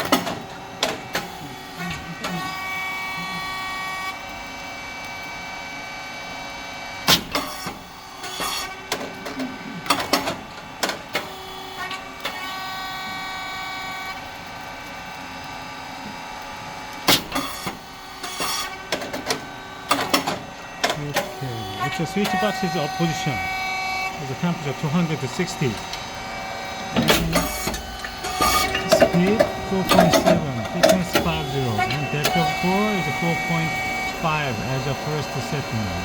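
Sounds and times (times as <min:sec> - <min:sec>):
machine motor hum: 0:19.9 - 0:36.0.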